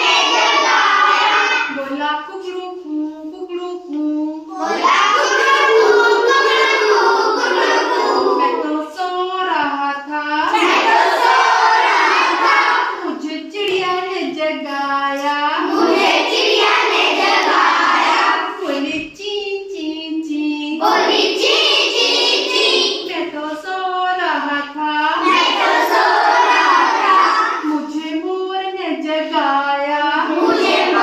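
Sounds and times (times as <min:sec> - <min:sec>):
children singing in unison: 0:00.0 - 0:01.9, 0:04.4 - 0:08.9, 0:10.5 - 0:14.0, 0:15.2 - 0:19.9, 0:20.8 - 0:23.3, 0:25.2 - 0:27.9, 0:30.1 - 0:31.0.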